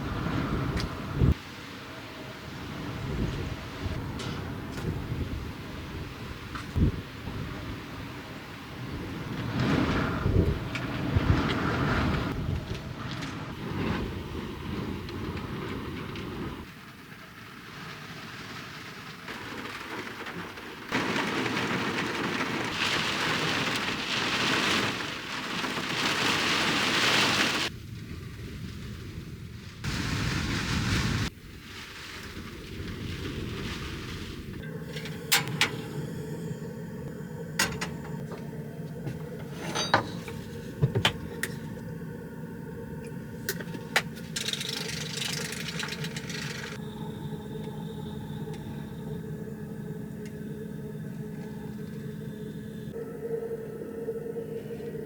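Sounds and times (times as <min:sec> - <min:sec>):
rain hiss: 0:00.0 - 0:55.0
low hum: 0:32.7 - 0:55.0.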